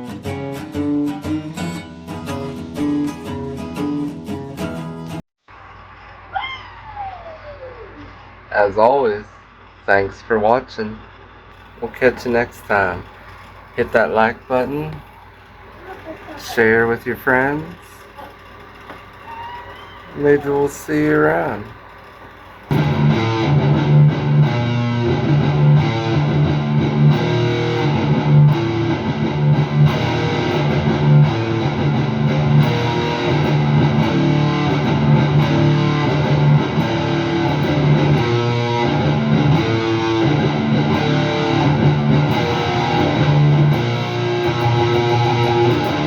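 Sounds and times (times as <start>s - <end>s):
blues music led by guitar: 0.0s - 5.2s, 22.7s - 46.0s.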